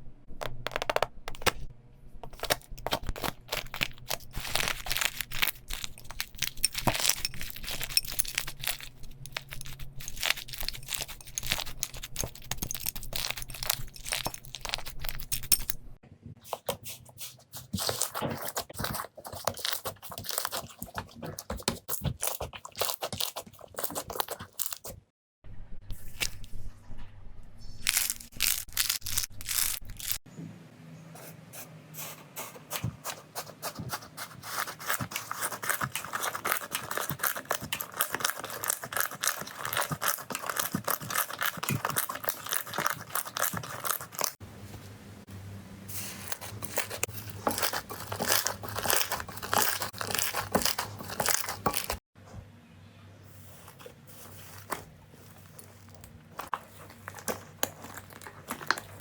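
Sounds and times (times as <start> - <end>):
slime crackling and popping: 2.3 - 15.4, 27.8 - 30.2, 46.4 - 52.0.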